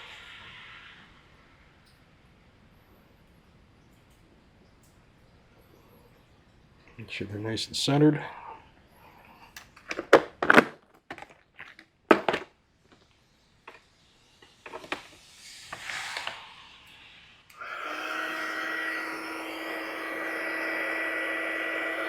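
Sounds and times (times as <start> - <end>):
heat gun fan whine: 13.7 - 22.0.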